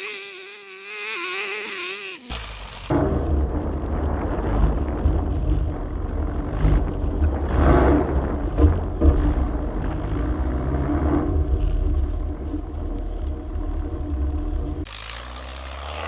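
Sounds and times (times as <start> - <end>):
car engine low rumble: 2.9 - 15.1.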